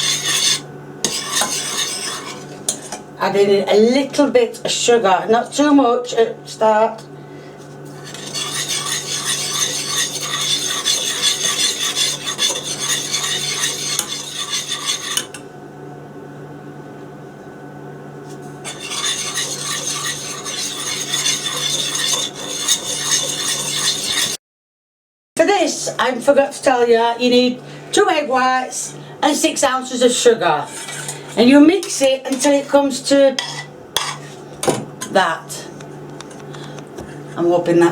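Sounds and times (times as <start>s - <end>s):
whisk scraping against pan: 0.0s - 2.6s, 7.8s - 15.4s, 18.6s - 24.4s, 30.6s - 32.5s, 33.4s - 34.4s.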